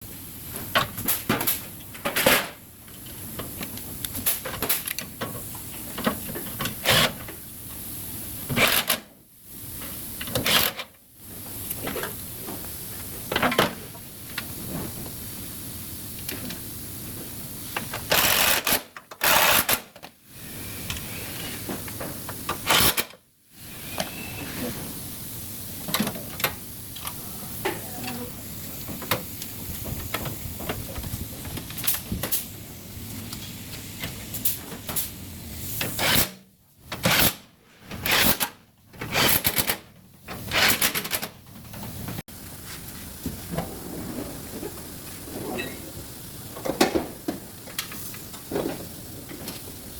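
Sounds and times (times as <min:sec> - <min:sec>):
welding hiss bursts: 0:17.6 - 0:21.6, 0:22.5 - 0:24.4, 0:33.7 - 0:36.4, 0:37.0 - 0:39.8.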